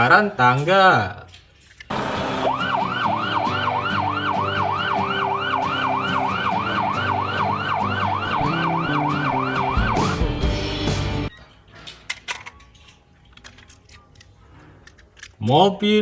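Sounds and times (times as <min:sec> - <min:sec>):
electronic fire engine siren: 0:01.9 - 0:10.6
background music: 0:02.2 - 0:11.3.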